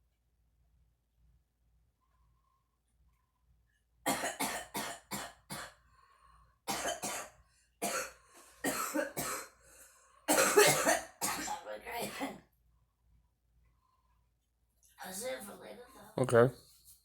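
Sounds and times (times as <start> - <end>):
woman coughing: 4.1 - 5.8, 6.7 - 9.6, 10.3 - 12.4.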